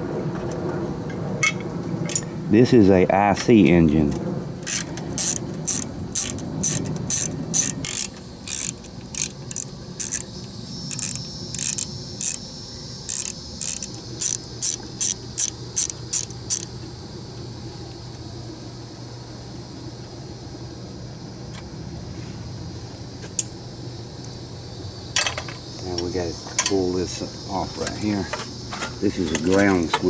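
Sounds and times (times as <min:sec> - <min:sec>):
ratchet wrench clicking: 0:04.6 - 0:12.4, 0:13.1 - 0:16.7.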